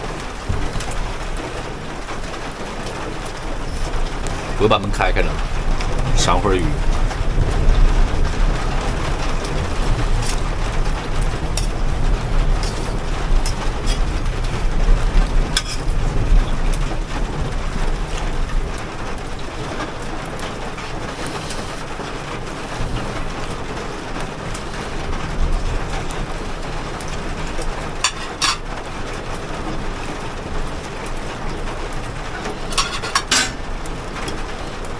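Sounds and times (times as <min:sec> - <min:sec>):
strong low rumble: 0:00.0 - 0:19.5
steady rain falling: 0:00.0 - 0:34.9.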